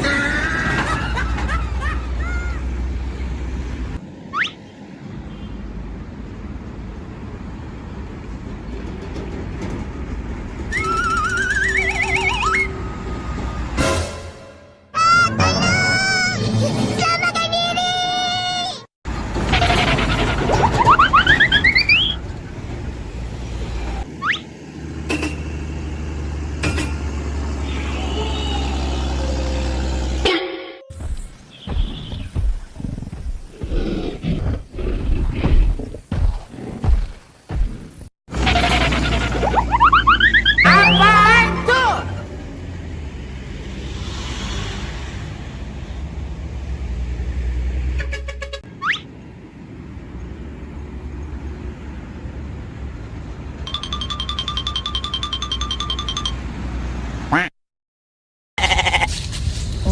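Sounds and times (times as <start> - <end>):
vehicle noise: 0.0 - 36.3, 37.2 - 57.5
rising whistle-like sound: 10.7 - 13.8
upward gliding pitched sound: 39.2 - 42.4.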